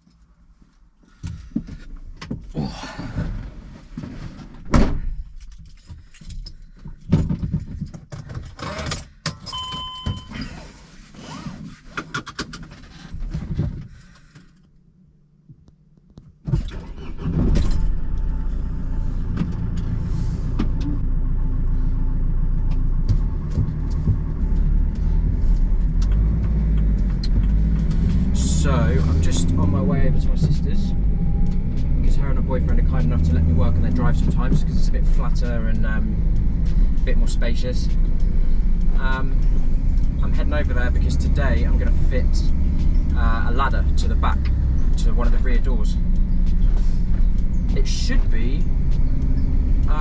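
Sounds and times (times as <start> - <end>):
short electronic beep: 9.5 - 10.4
diesel van engine running: 16.7 - 50.0.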